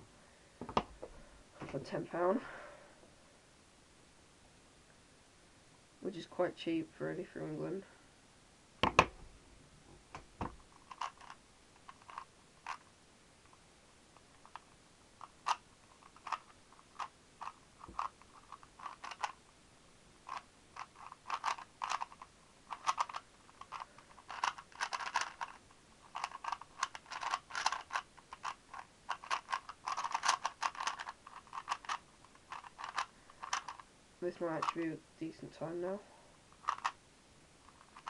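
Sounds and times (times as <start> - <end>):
plastic puzzle cube clicking: 10.1 - 12.9, 14.2 - 19.4, 20.3 - 33.8, 34.6 - 34.8, 36.6 - 37.0, 37.7 - 38.0.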